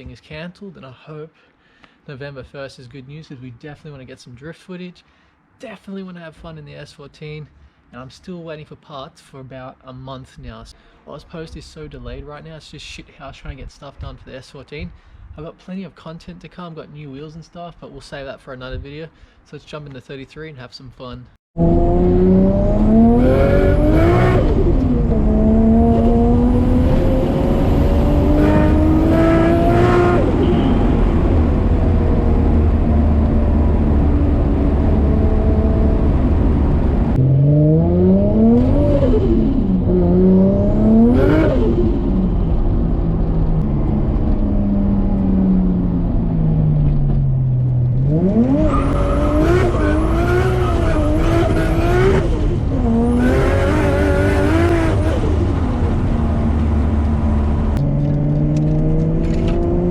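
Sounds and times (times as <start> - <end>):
turbocharged car engine revving: 21.6 - 47.0, 47.6 - 59.9.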